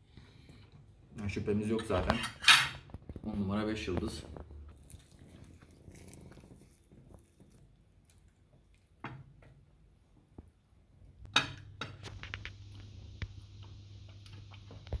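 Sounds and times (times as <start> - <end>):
low hum with hiss: 0.0 - 15.0
cutlery clinking against a plate: 1.8 - 2.8.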